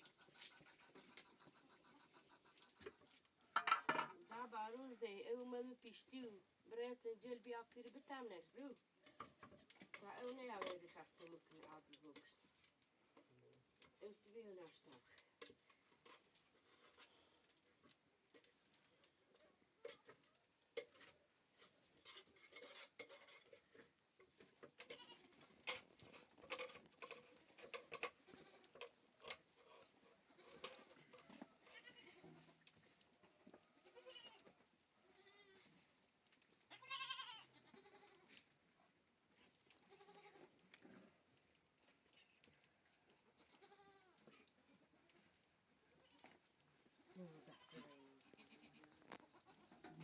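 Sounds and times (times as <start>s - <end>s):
goats bleating: 31.6s - 32.6s, 33.8s - 35.6s, 36.7s - 38.3s, 39.8s - 40.5s, 43.3s - 44.2s, 47.0s - 49.8s.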